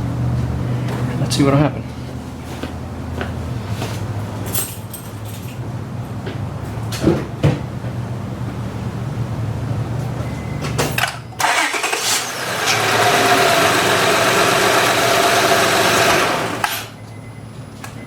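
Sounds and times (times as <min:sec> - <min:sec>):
car engine cranking and starting: 0:11.0 - 0:17.0.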